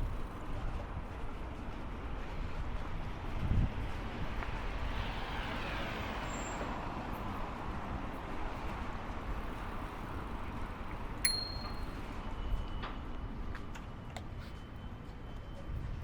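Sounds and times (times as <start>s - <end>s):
wind rumble on microphone: 2.2s - 5.0s
traffic noise: 3.9s - 11.0s
sharp click with high ring: 11.3s - 12.0s.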